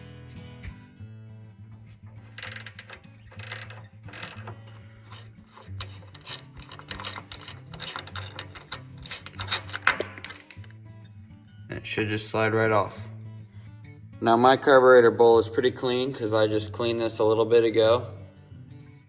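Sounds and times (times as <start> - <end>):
socket ratchet clicking: 2.2 - 10.7.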